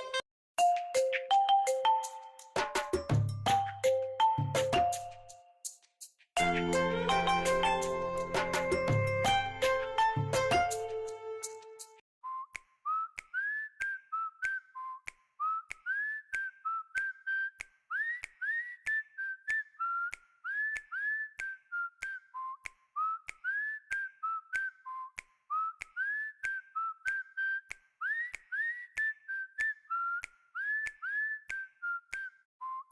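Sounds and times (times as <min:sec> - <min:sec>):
whistled ringtone tune: 0:00.6 - 0:05.6.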